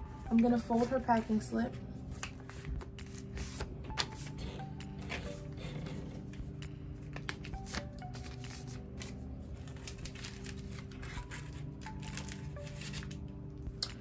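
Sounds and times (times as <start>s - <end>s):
soft background music: 0.0s - 14.0s
paper rustling and creasing: 7.1s - 13.3s.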